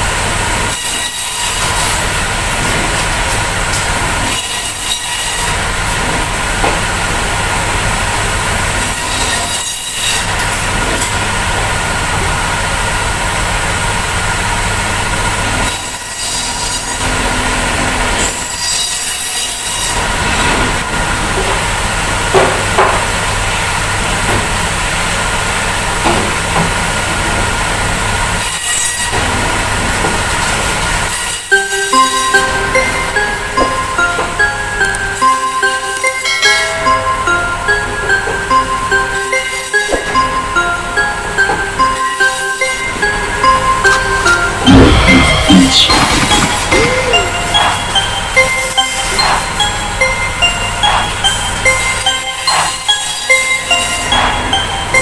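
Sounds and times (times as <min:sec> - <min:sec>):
band saw cutting bone: 0:00.6 - 0:02.0, 0:03.7 - 0:05.6.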